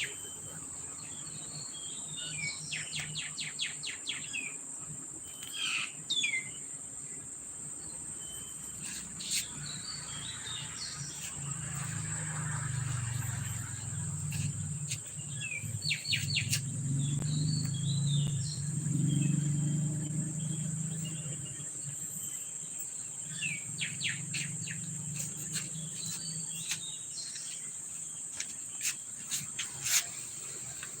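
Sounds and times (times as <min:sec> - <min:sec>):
small birds chirping: 0:00.0 - 0:31.0
low hum: 0:11.4 - 0:22.3.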